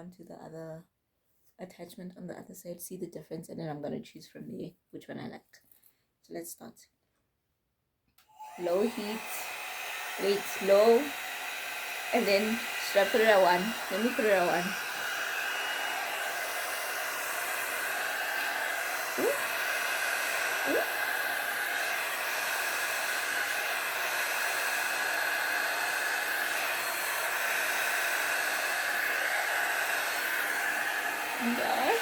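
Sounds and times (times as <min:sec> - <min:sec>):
hair dryer blowing air: 0:08.3 - 0:32.0.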